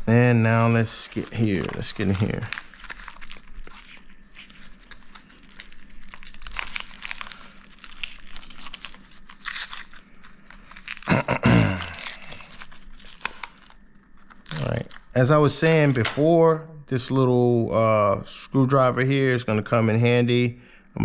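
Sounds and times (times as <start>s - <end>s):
packaging torn and crinkled: 0.0s - 16.1s.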